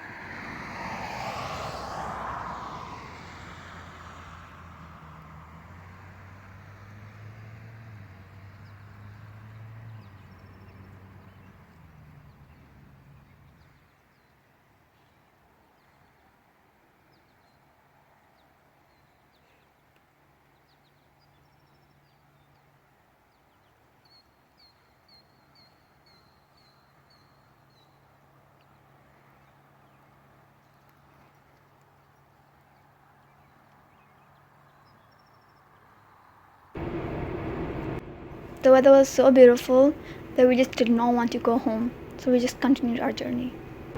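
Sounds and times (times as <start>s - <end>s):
vehicle engine humming: 0.0s - 13.4s, 36.8s - 43.9s.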